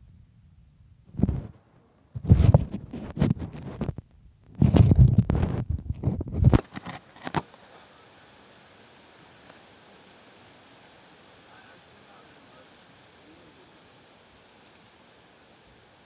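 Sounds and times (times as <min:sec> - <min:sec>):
faint steady hiss: 0:00.0 - 0:16.0
wind buffeting microphone: 0:02.2 - 0:06.6.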